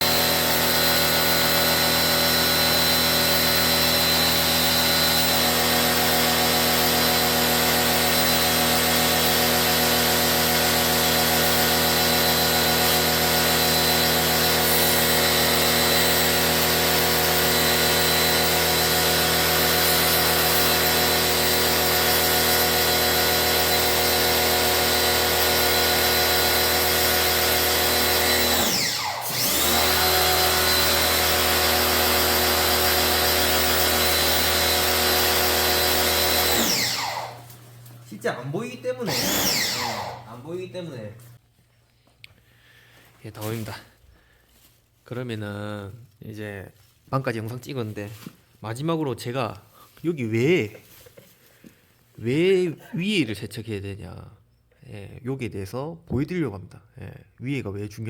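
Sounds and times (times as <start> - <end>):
electric motor whining: 0.0 - 37.9, 39.0 - 41.4.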